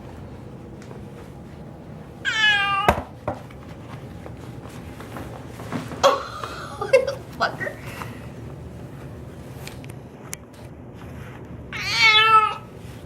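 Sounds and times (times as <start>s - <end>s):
cat meowing: 2.2s - 2.9s, 11.8s - 12.7s.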